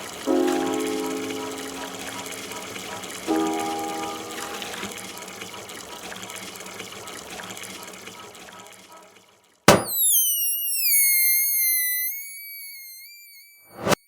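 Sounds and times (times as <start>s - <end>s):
rushing water-like noise: 0.0s - 7.1s
sharp click: 9.7s - 10.3s
high whistling tone sliding down: 9.7s - 14.0s.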